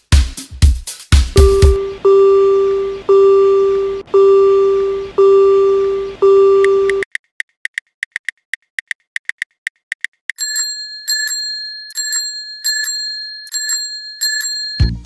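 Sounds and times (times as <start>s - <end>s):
rapid high ticks: 6.9s - 10.4s
railroad crossing bell ringing: 10.4s - 15.0s.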